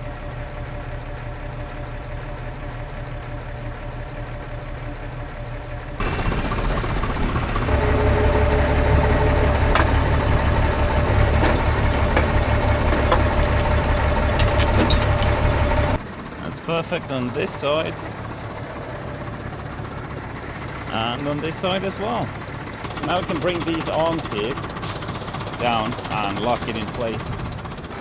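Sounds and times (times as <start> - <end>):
diesel tractor engine: 0.0 - 28.0
hydraulic whine: 6.0 - 16.0.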